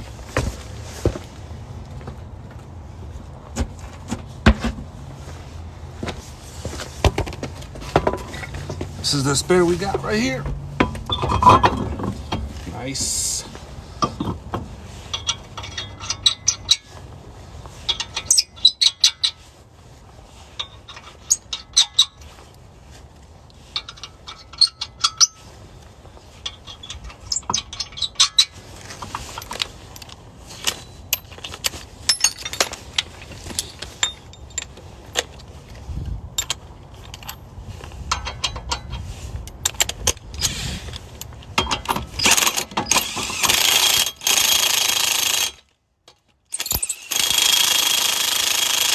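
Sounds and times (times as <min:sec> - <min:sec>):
metallic clicks of lug nuts: 0:14.0 - 0:17.0, 0:17.8 - 0:19.4, 0:20.6 - 0:22.3, 0:23.7 - 0:25.5, 0:26.4 - 0:35.4, 0:38.0 - 0:48.9
impact wrench rattling: 0:39.6 - 0:45.6, 0:46.5 - 0:48.9.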